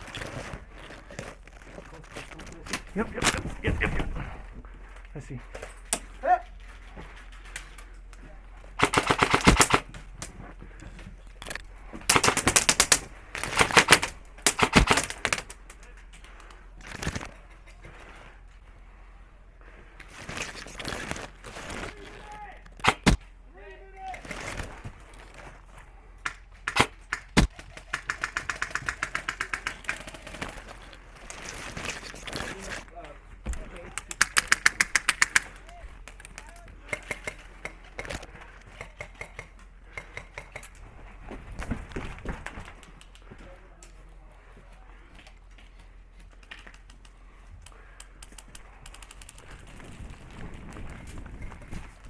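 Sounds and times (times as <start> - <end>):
airsoft rifle full-auto bursts: 8.8 - 9.9, 12.1 - 15.6, 26.6 - 30.2, 34.1 - 35.6.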